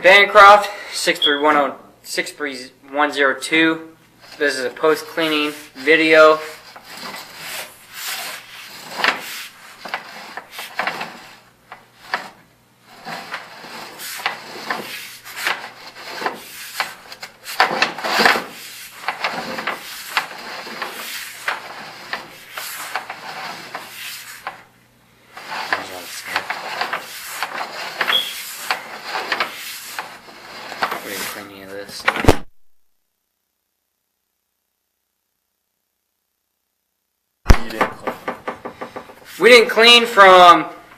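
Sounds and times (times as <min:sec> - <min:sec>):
inspection camera scraping in pipe: 0:04.2 - 0:24.7, 0:25.3 - 0:31.7.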